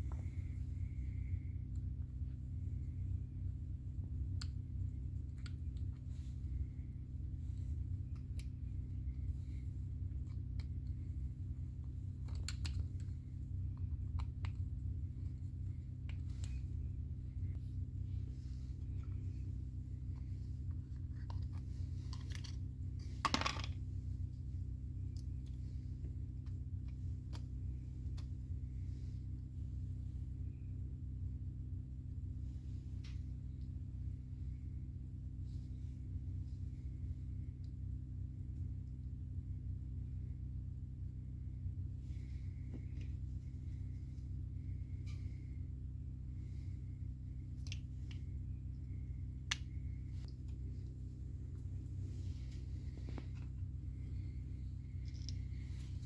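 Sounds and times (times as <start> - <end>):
steady low hum: 0.0 - 56.0
light clicks of small parts: 4.2 - 6.2, 11.8 - 16.7, 47.4 - 50.9, 54.2 - 56.0
clicks of small parts handled: 12.2 - 13.1.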